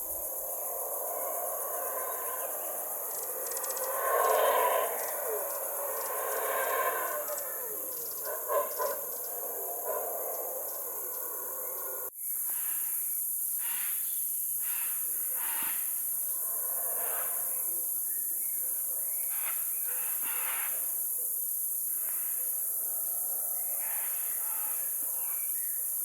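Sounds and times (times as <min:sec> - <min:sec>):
high insect buzz: 0:00.0 - 0:18.1
bird calls: 0:01.7 - 0:12.1.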